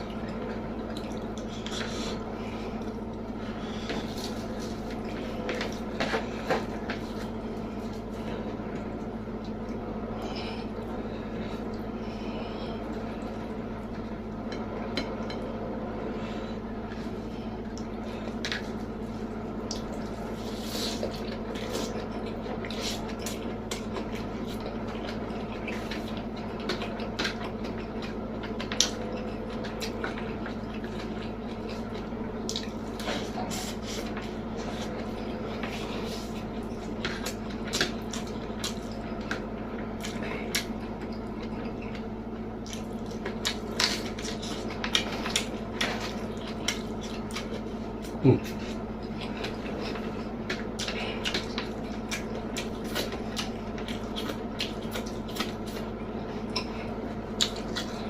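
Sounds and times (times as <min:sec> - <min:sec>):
low background hum: 0:00.0 - 0:58.0
wet chewing and lip smacks: 0:21.0 - 0:33.1, 0:40.0 - 0:55.9.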